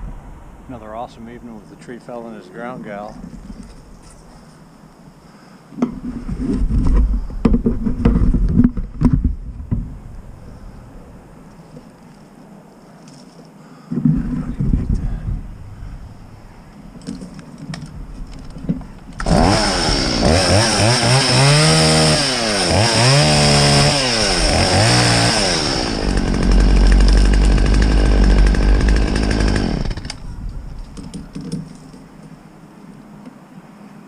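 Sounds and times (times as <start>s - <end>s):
chainsaw revving: 19.2s - 30.2s.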